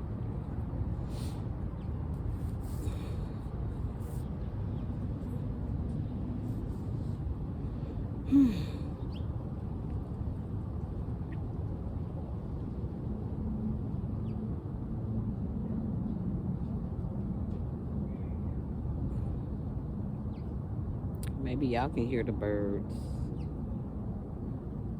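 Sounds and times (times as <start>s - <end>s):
distant traffic: 0.0s - 24.9s
wind: 0.0s - 24.9s
breathy sigh: 8.2s - 8.9s.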